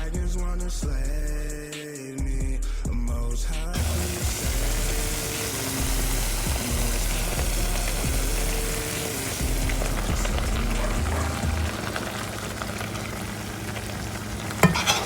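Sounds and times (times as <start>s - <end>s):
bass-heavy hip-hop beat: 0.0s - 11.8s
chicken sizzling in a pan: 3.8s - 15.0s.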